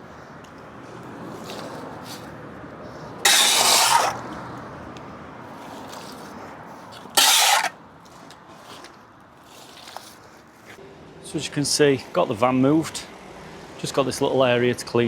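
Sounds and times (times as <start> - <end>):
water jet on paving: 3.2 - 4.3, 7.0 - 7.8.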